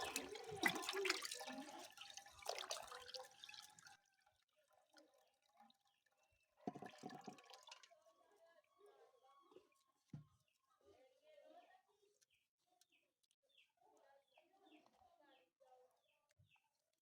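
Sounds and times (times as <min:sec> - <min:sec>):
liquid pouring and splashing: 0:00.0 - 0:06.0, 0:06.6 - 0:08.1.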